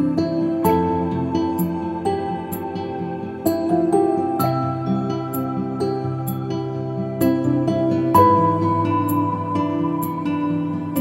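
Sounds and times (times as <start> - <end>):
gentle new-age music: 0.0 - 11.0.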